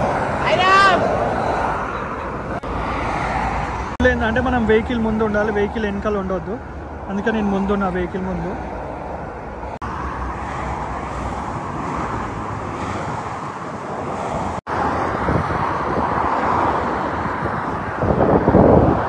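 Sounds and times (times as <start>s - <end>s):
motorway traffic rushing past: 0.0s - 19.0s
wind on microphone: 10.4s - 19.0s.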